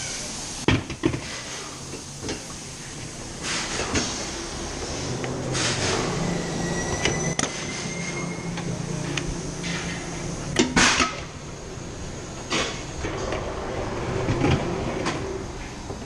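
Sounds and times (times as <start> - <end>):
compressed air hissing bursts: 0.0 - 6.7.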